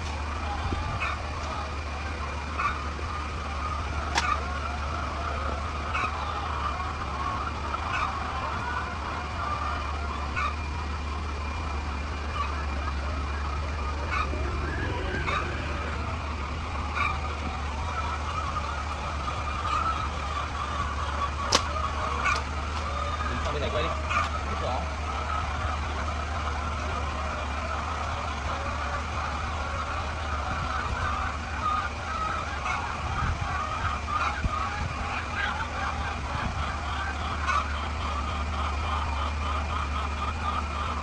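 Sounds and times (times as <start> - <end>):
faint steady whine: 0.0 - 39.5
mechanical hum: 0.0 - 41.0
wavering higher drone: 12.8 - 19.3.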